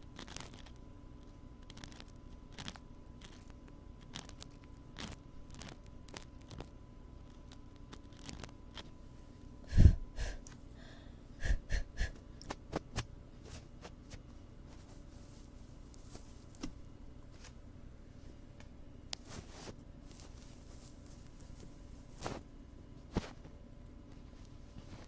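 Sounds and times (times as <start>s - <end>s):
soft clicks and scratches: 0.2s - 9.0s.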